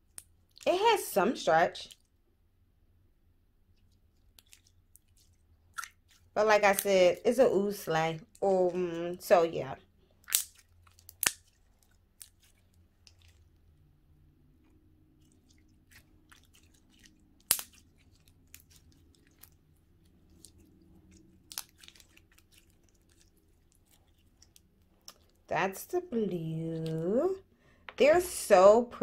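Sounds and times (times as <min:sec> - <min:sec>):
slime squishing with wet pops: 0:03.7 - 0:07.0, 0:09.9 - 0:25.5.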